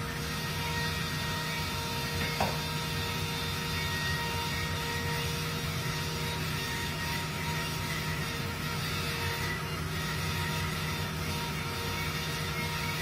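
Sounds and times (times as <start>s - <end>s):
milling machine humming: 0.0s - 13.0s.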